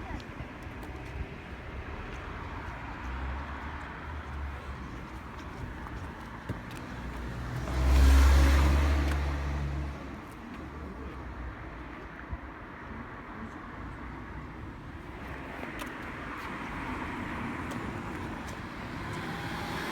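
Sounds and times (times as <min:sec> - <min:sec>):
low steady traffic noise: 0:00.0 - 0:19.9
car passing close by: 0:07.1 - 0:10.0, 0:18.0 - 0:19.9.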